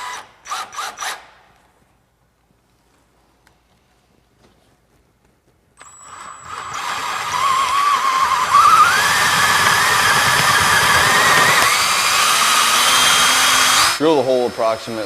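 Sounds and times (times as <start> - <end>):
electric drill boring into wood: 0.0 - 1.2, 5.8 - 15.0.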